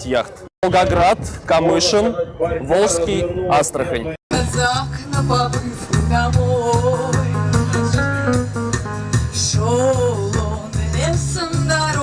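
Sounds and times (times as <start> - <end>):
song with bass and beat: 4.3 - 12.0.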